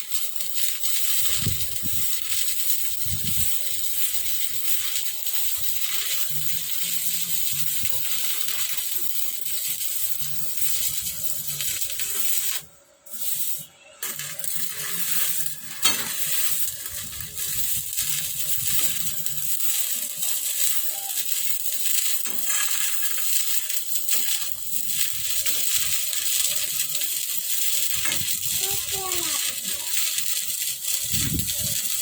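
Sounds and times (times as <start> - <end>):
welding arc crackling and sizzling: 0.0 - 32.0
sharp arc crack: 13.3 - 32.0.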